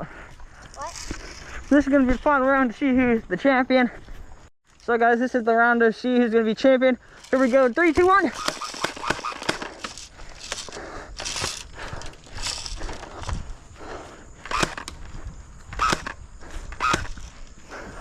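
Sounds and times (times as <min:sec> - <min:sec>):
sharp clicks: 0:07.3 - 0:13.0, 0:14.4 - 0:17.3.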